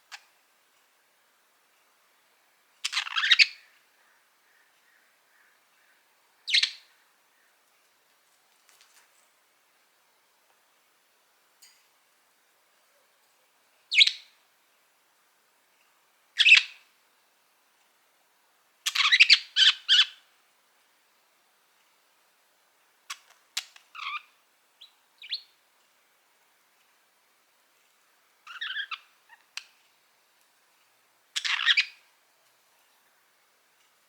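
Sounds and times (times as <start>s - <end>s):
budgerigar chirping: 2.9s - 3.6s, 18.9s - 20.2s, 28.5s - 29.1s, 31.4s - 32.0s.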